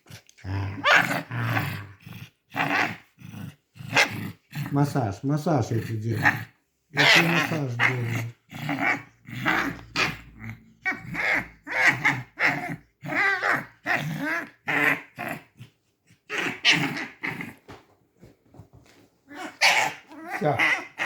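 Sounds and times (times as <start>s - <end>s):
fox squeaky growling calls: 7.0s - 15.2s, 19.3s - 21.0s
fox squealing: 19.3s - 21.0s.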